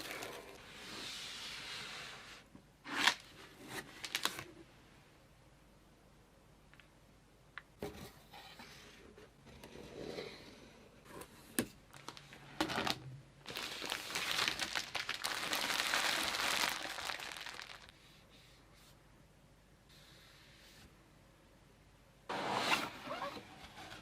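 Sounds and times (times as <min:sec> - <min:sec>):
packaging crinkling: 0:04.0 - 0:04.5, 0:11.9 - 0:18.0.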